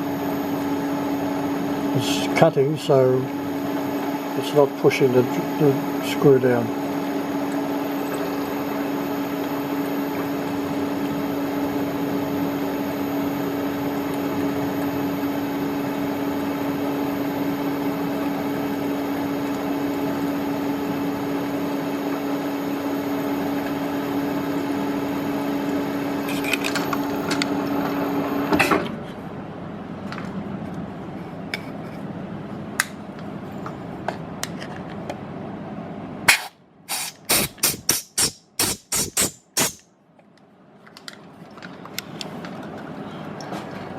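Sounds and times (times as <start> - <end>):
milling machine spindle whine: 0.0 - 28.6.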